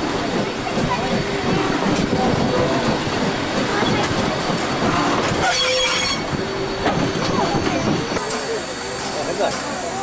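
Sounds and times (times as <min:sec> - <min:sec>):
train rolling along track: 0:00.0 - 0:10.0
high-pitched wheel squeal: 0:05.4 - 0:07.0.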